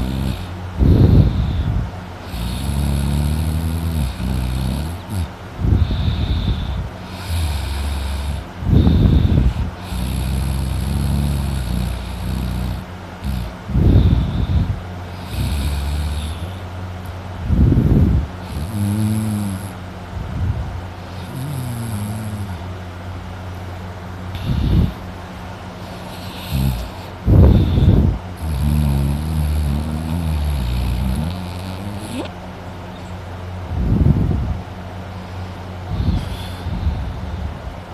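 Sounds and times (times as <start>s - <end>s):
man snoring loudly: 0.0s - 16.7s, 17.5s - 19.8s, 21.0s - 22.6s, 24.3s - 25.1s, 25.8s - 32.3s, 35.9s - 37.1s.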